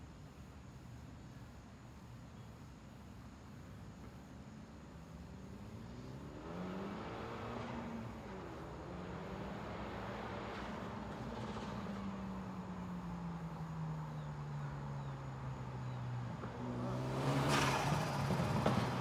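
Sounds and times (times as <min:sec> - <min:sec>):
car engine revving: 0:16.6 - 0:19.0.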